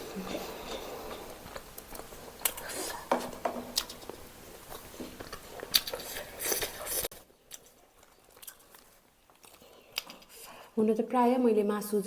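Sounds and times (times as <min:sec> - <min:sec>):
person chewing chicken: 0:01.1 - 0:10.5.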